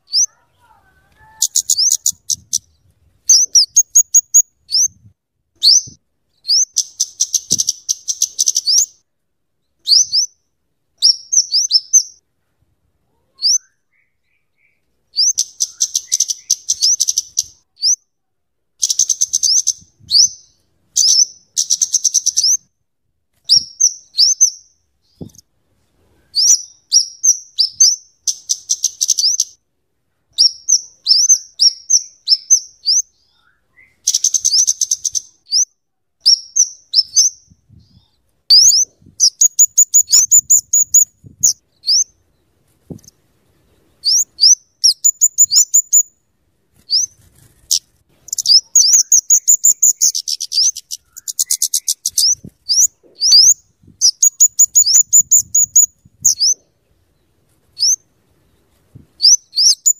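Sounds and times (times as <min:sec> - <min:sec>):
bird chattering calls: 0:00.1 - 0:02.6, 0:03.3 - 0:04.4.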